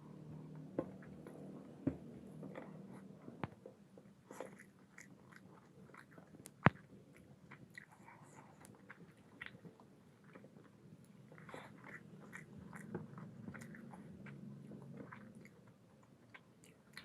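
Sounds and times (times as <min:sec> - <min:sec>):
close chewing: 0:04.2 - 0:17.0.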